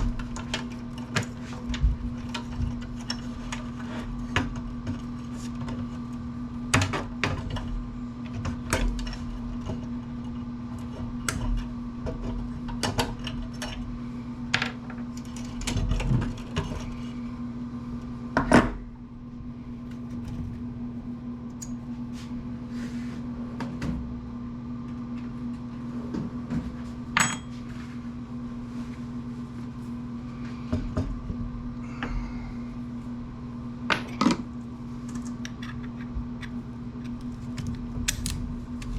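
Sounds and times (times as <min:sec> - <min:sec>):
steady hum: 0:00.0 - 0:38.9.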